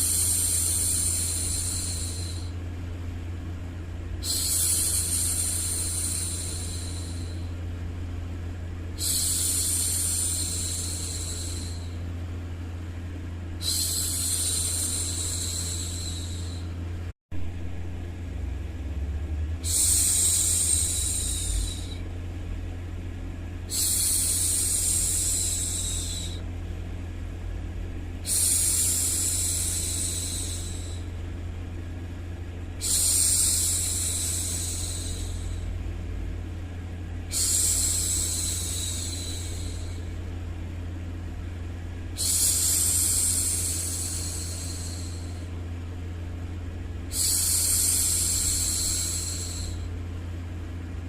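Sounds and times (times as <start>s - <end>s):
low background hum: 0.0s - 51.0s
woman shushing: 13.6s - 16.7s, 19.6s - 22.0s, 28.2s - 31.0s, 32.8s - 35.7s, 37.3s - 40.1s.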